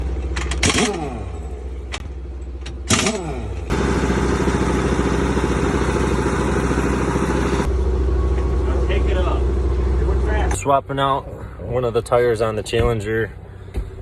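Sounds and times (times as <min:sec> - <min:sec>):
engine idling hum: 0:00.0 - 0:14.0
air impact wrench: 0:00.4 - 0:01.4, 0:02.8 - 0:07.7.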